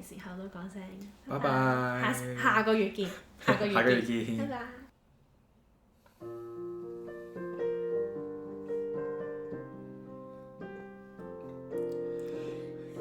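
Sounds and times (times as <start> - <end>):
piano playing slow chords: 6.2 - 13.0.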